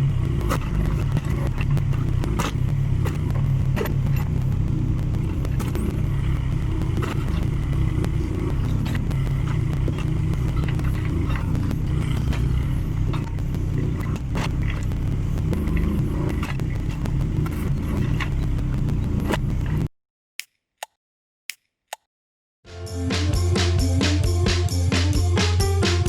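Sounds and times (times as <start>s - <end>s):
diesel engine running: 0.0s - 19.9s.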